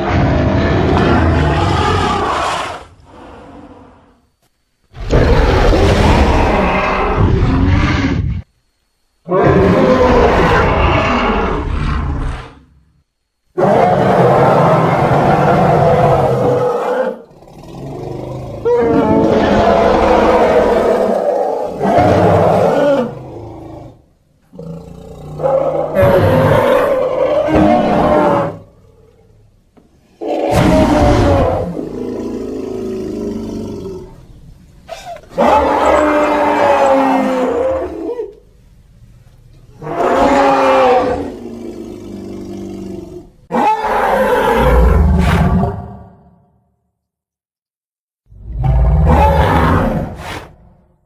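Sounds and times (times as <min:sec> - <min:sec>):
rhinoceros calling: 0:30.2 - 0:38.4.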